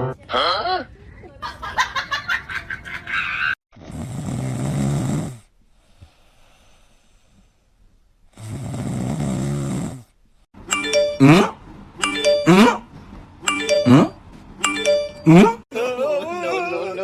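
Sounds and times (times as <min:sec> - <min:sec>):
pet snoring: 0:03.8 - 0:07.4, 0:08.3 - 0:10.2.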